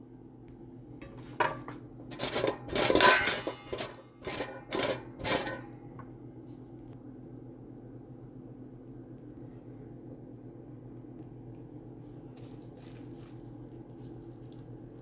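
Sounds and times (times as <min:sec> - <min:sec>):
kitchen utensil scraping: 0:01.0 - 0:05.8
faint steady low hum: 0:05.6 - 0:15.0.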